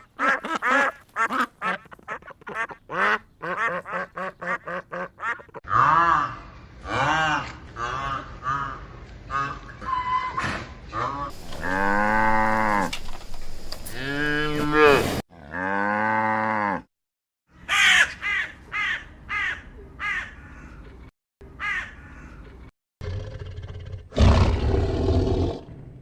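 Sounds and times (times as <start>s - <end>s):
cows mooing: 11.3s - 16.8s
crow-like caws: 11.4s - 12.9s, 17.7s - 20.8s, 21.6s - 22.4s.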